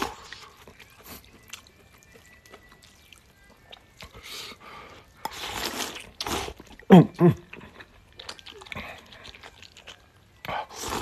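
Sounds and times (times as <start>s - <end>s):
person slurping noodles: 5.3s - 6.7s.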